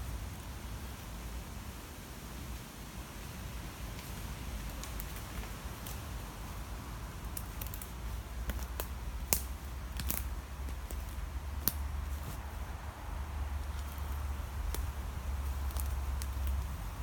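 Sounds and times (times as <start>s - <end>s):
dry twigs cracking and snapping: 4.0s - 6.1s, 7.2s - 12.5s, 13.4s - 17.0s
steady low rumble: 6.0s - 17.0s.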